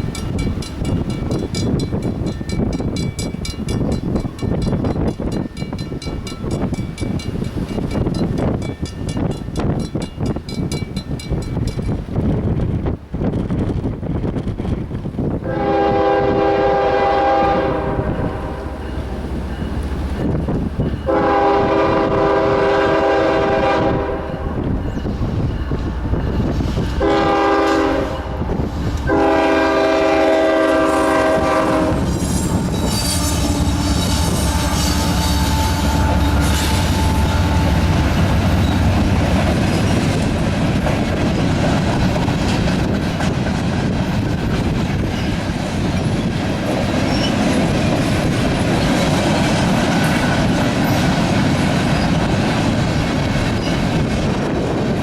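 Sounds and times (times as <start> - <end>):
train wheels clickety-clack: 0.0 - 15.2, 18.3 - 55.0
locomotive horn blasts: 15.4 - 19.0, 21.1 - 24.6, 26.9 - 38.2.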